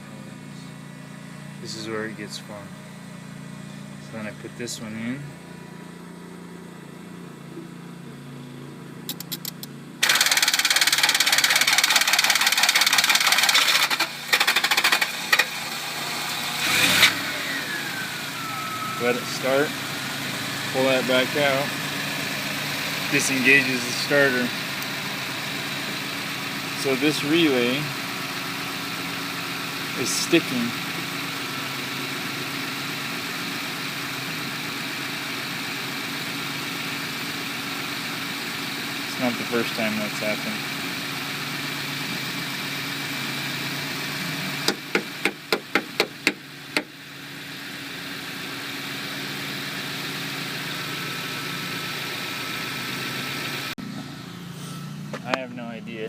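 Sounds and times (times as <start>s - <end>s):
car engine idling: 0.0s - 56.0s
sharp clicks: 9.1s - 13.2s
starter motor cranking engine: 9.1s - 21.9s.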